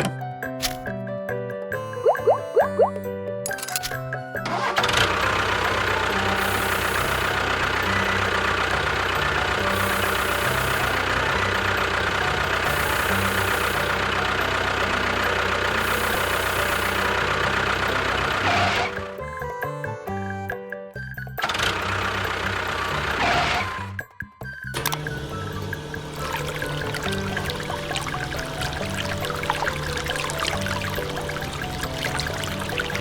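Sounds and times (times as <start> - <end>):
low tones changing in steps: 2.0 - 3.1
engine running with fast chatter: 4.4 - 19.4, 21.4 - 24.0, 24.8 - 33.0.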